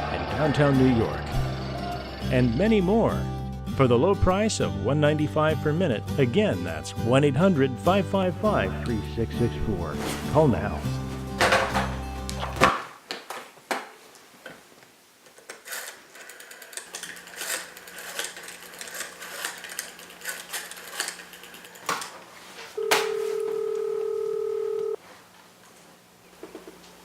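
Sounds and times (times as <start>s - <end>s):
telephone dialling clicks: 22.8s - 25.0s
telephone ringing tone: 22.8s - 25.0s.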